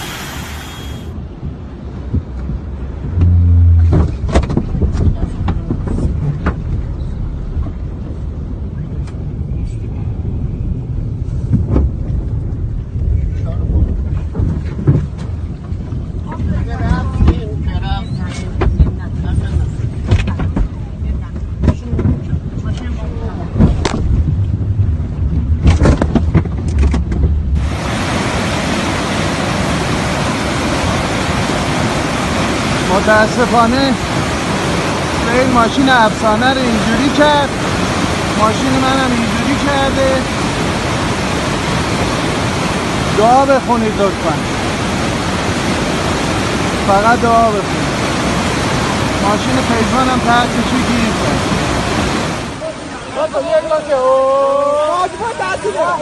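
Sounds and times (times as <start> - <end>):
rushing floodwater rumble: 0.0 - 56.0
low rumble: 1.1 - 16.5, 18.8 - 28.0
low hum: 2.7 - 14.1.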